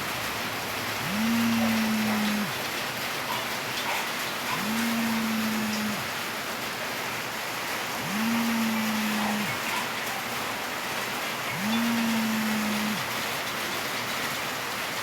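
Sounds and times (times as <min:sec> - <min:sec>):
phone vibration motor buzzing: 0:01.0 - 0:02.6, 0:04.5 - 0:06.2, 0:08.0 - 0:09.9, 0:11.4 - 0:13.2.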